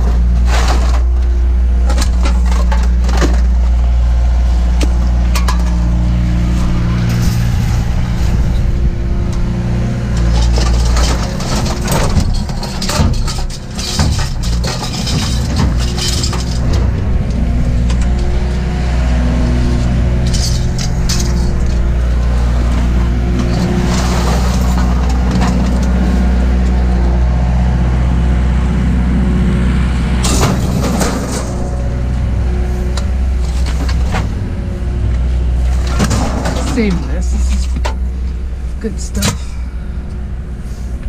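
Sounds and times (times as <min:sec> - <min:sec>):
vehicle engine idling: 0:00.0 - 0:41.0
short clatters: 0:10.2 - 0:17.0.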